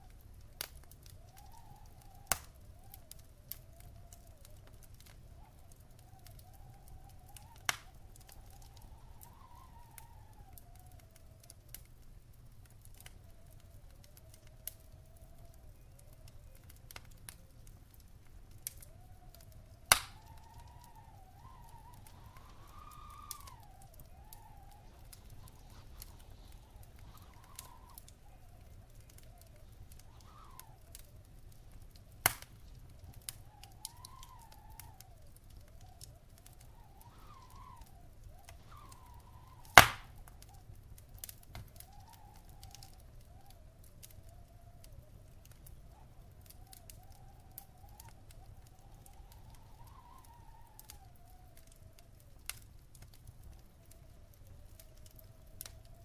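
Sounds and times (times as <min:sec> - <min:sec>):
faint wavering whistle: 0:00.0 - 0:11.6, 0:13.1 - 0:17.6, 0:18.7 - 0:31.9, 0:32.5 - 0:52.2
wood fire crackling: 0:00.0 - 0:56.0
loud fire pops: 0:00.1 - 0:43.9.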